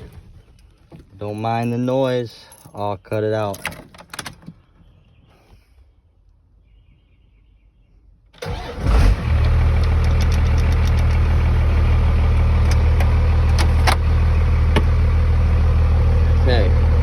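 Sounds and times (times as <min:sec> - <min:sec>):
diesel engine cranking and idling: 0:08.4 - 0:17.0
sharp clicks: 0:09.4 - 0:11.3.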